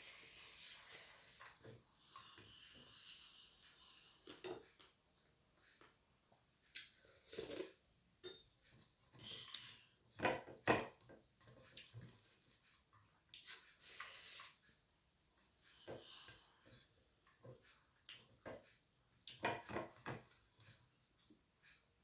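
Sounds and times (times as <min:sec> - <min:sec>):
cutlery clinking on a plate: 0:07.2 - 0:08.6.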